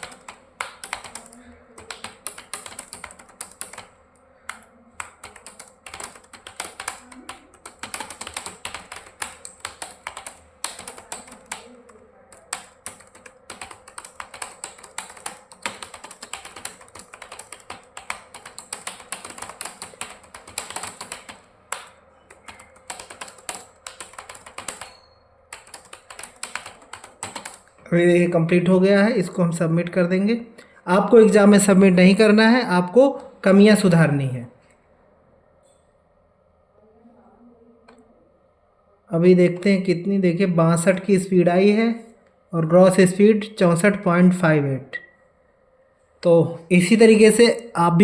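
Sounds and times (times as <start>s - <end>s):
fast typing on computer keyboard: 0.0s - 27.8s.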